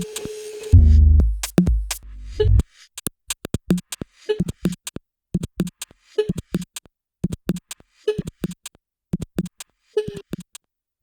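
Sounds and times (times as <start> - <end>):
electronic drum-machine beat: 0.0 - 2.6.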